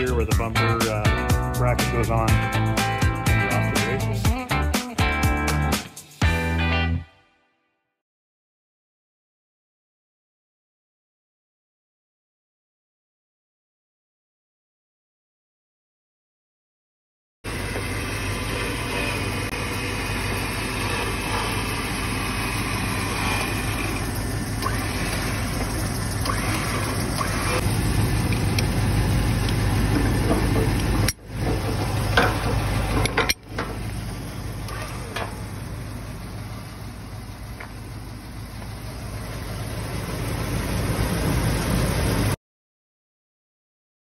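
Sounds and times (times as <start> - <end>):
vehicle engine running: 0.0 - 6.4, 17.5 - 42.4.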